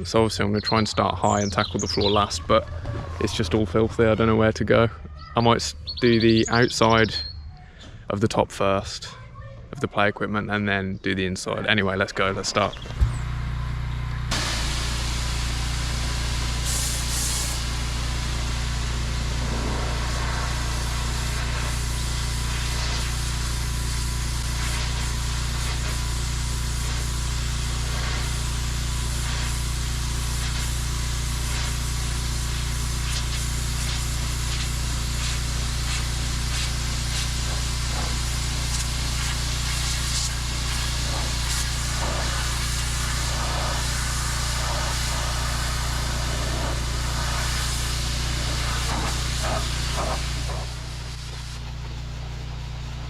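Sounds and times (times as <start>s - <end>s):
pressure washer hum: 12.3s - 53.0s
high-pressure water spray hiss: 14.3s - 53.0s.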